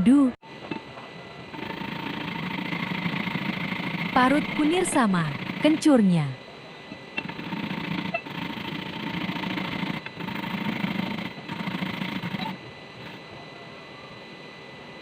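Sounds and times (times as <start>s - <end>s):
rhizomes grated by hand: 0.6s - 6.0s, 6.9s - 13.4s.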